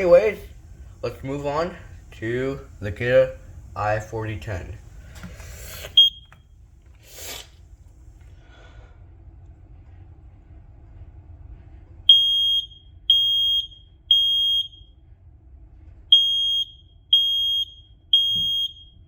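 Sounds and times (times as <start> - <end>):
smoke alarm beeping: 5.8 - 6.4, 12.1 - 15.0, 16.1 - 19.0.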